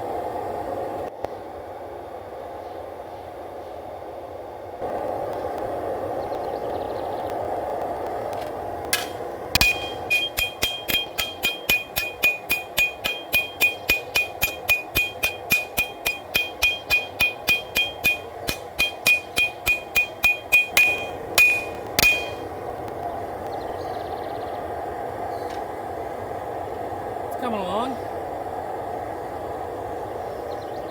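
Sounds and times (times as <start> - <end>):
hammer striking steel on anvil: 8.9 - 22.6.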